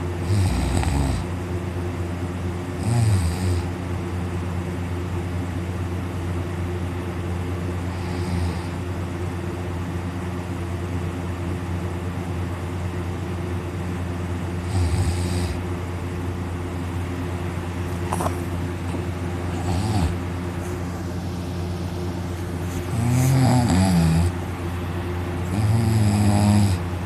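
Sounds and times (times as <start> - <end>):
steady low hum: 0.0 - 27.0
man snoring: 0.2 - 1.3, 2.8 - 3.7, 7.8 - 8.9, 14.6 - 15.6, 19.5 - 20.2, 22.7 - 24.4, 25.4 - 26.9.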